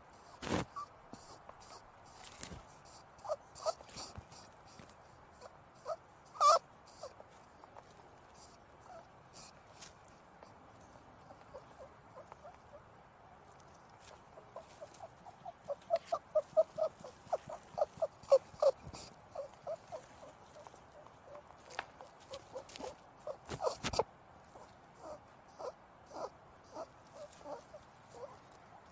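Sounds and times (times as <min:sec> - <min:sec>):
small animal squeaking: 0:00.2 - 0:12.9, 0:13.6 - 0:28.9
light clicking or pattering: 0:13.5 - 0:24.8.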